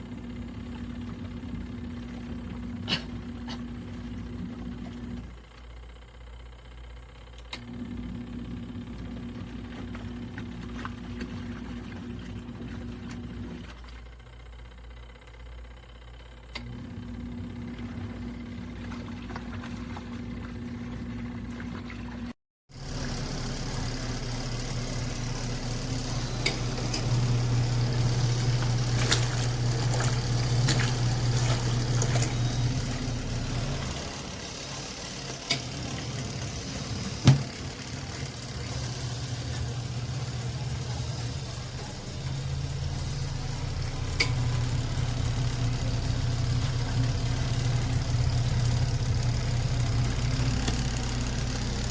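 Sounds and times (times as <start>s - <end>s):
washing machine motor hum: 0.0s - 51.9s
water sloshing: 27.8s - 34.2s.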